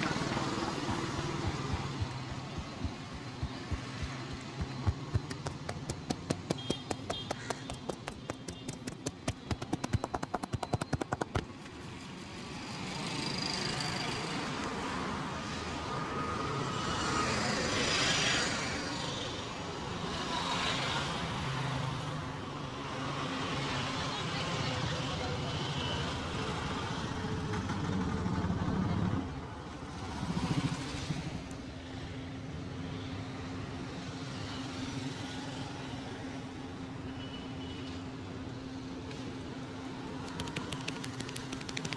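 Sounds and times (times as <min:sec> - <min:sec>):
street and traffic noise: 0:00.0 - 0:41.9
hand tapping head massage slaps: 0:00.7 - 0:11.5, 0:40.2 - 0:41.9.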